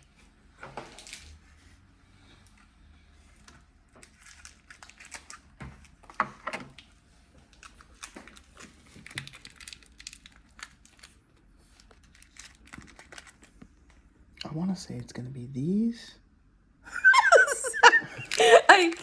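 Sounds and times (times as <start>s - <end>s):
packaging rustling and crinkling: 4.0s - 13.8s.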